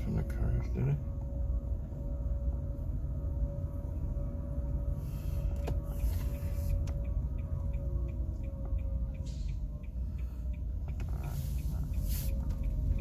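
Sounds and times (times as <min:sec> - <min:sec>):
car cabin rumble: 0:00.0 - 0:13.0
faint regular ticking: 0:06.7 - 0:13.0.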